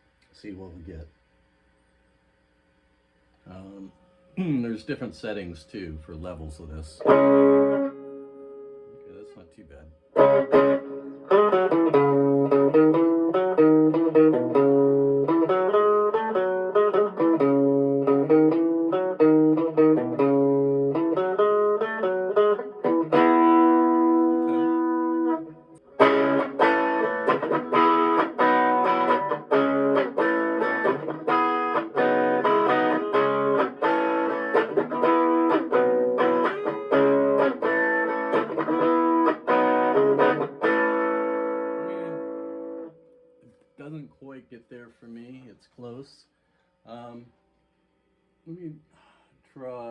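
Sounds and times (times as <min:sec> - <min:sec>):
distorted electric guitar riffs: 0:07.0 - 0:09.3, 0:10.0 - 0:43.0.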